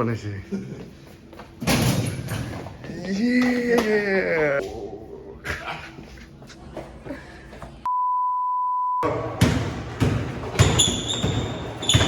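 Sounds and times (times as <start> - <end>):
high censor beep: 7.9 - 9.1.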